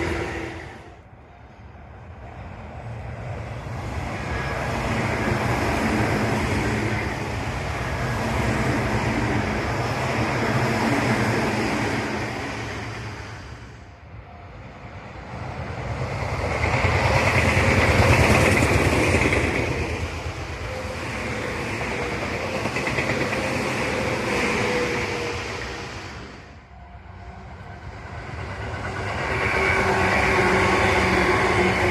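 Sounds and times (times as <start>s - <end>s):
electric trains passing: 0.0s - 31.9s.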